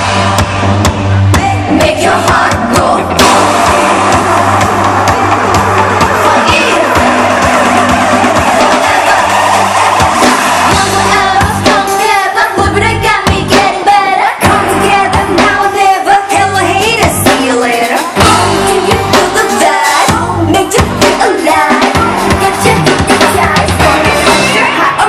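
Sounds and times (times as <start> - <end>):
pop backing track with beat: 0.0 - 25.0
woman singing: 1.3 - 4.0, 6.1 - 7.1, 10.7 - 25.0.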